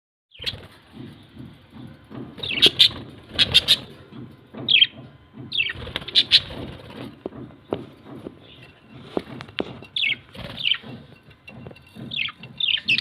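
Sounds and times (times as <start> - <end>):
parrots squawking and chirping: 2.4 - 4.0, 5.5 - 6.7, 9.6 - 11.0, 12.1 - 13.0.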